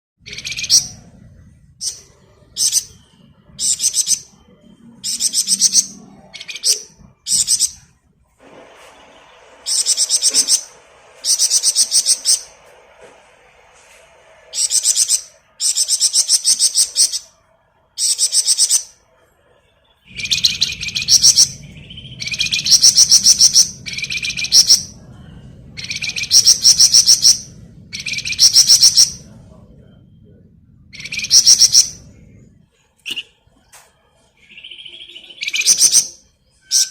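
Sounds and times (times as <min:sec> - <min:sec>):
songbird rattling trills: 0:09.6 - 0:12.5, 0:31.0 - 0:32.0.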